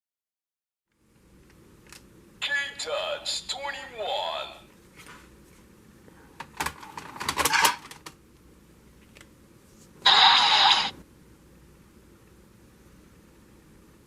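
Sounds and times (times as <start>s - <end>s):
loud hissy burst: 10.0s - 11.0s.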